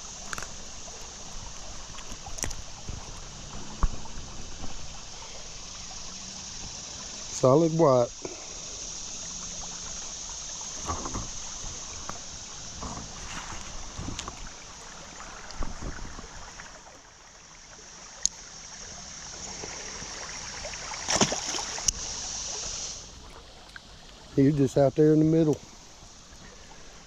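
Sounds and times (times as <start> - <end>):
boat and paddle knocks: 0.0 - 5.0, 10.8 - 16.7
creek current rushing: 0.0 - 27.0.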